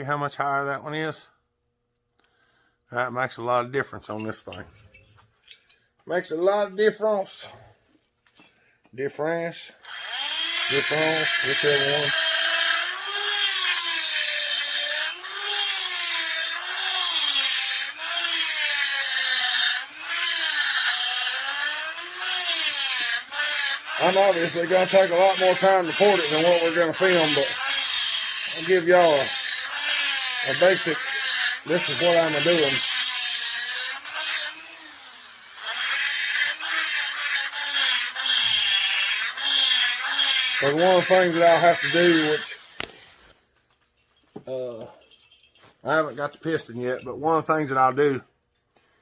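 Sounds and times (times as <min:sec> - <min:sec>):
rotary tool grinding metal: 0:09.8 - 0:43.4.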